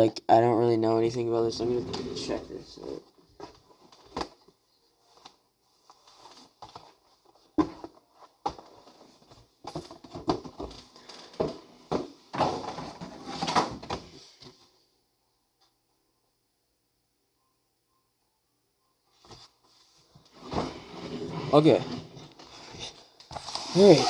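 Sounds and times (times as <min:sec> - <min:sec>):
box handling with rustling and taps: 0:03.4 - 0:14.6.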